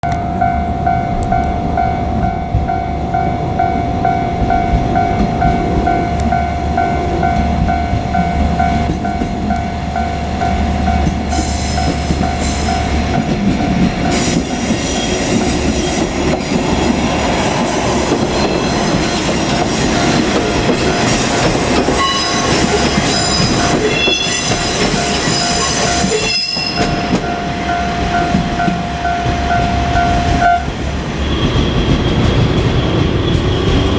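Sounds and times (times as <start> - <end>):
level-crossing alarm ringing: 0.0 - 30.7
diesel railcar engines rumbling: 0.0 - 33.9
wheels squealing: 13.8 - 27.4.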